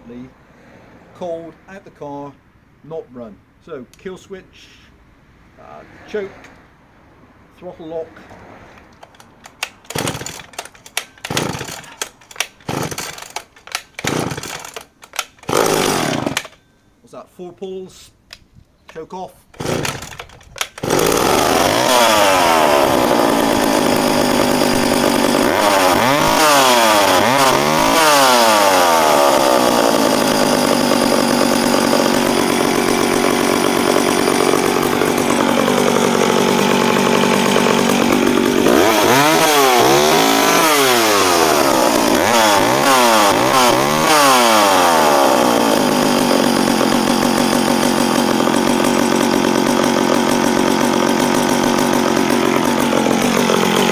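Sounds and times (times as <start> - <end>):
chainsaw engine revving: 8.9 - 16.6, 19.6 - 53.9.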